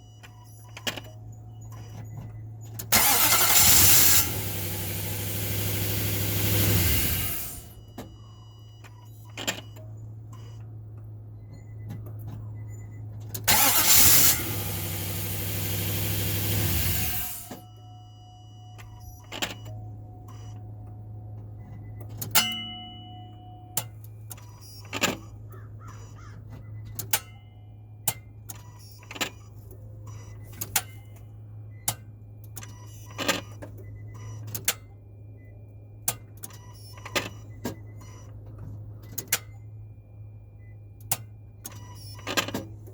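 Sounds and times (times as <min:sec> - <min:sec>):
loud engine noise: 0:02.9 - 0:07.8, 0:13.4 - 0:17.6.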